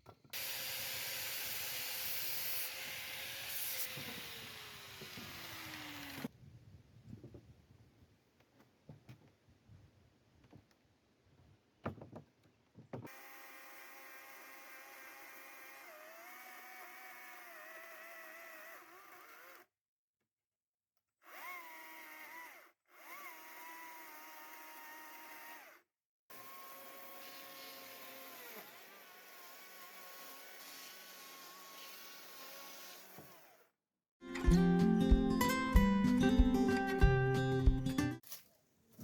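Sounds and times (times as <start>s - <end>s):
power tool motor whining: 0.3s - 6.3s, 21.2s - 33.6s
guitar music: 34.2s - 38.2s.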